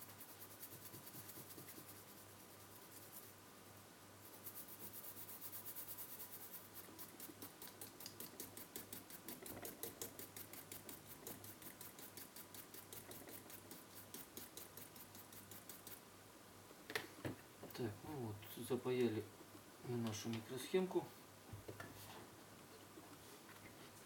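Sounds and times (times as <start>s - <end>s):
brush scrubbing circuit board: 0.0s - 3.4s, 4.2s - 16.0s.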